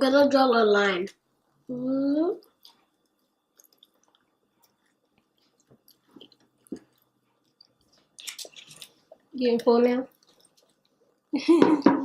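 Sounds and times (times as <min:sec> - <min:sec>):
quiet chewing: 0:02.4 - 0:11.4.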